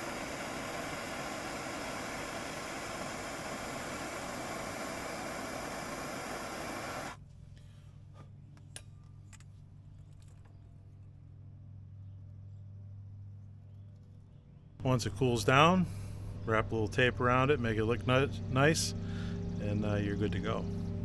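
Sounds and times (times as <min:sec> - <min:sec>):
heat tool hissing: 0:00.0 - 0:07.2.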